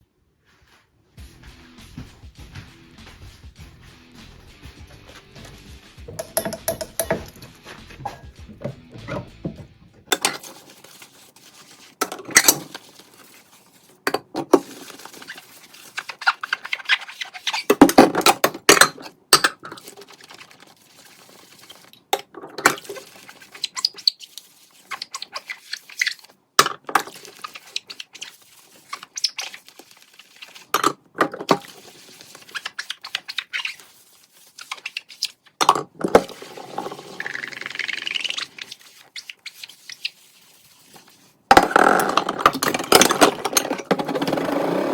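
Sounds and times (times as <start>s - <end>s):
dishes and utensils clinking: 6.1s - 10.5s.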